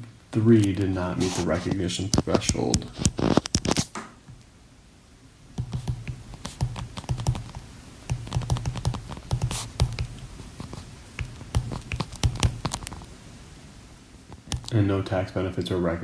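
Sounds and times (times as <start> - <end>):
typing on keyboard: 5.6 - 13.0, 14.5 - 14.8.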